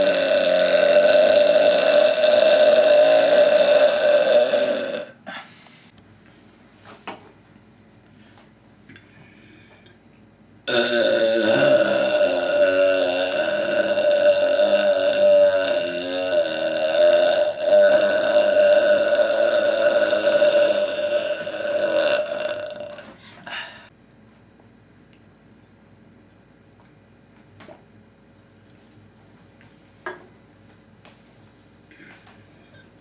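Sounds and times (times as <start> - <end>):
man burping: 0.0 - 5.4, 10.7 - 23.9.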